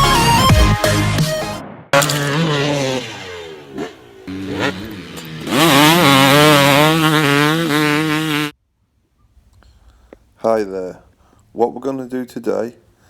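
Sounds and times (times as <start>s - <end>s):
motorcycle engine revving: 2.0s - 8.6s.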